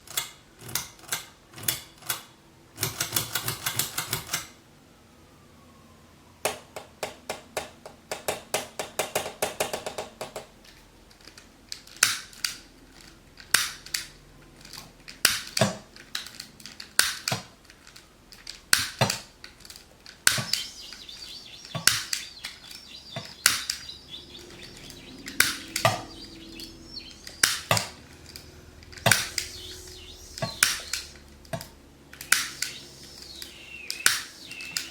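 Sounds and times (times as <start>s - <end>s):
rapid ticking clicks: 20.0s - 34.9s.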